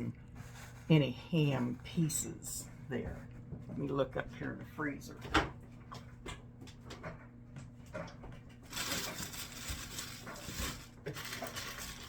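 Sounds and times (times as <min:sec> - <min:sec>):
freezer low steady hum: 0:00.0 - 0:12.0.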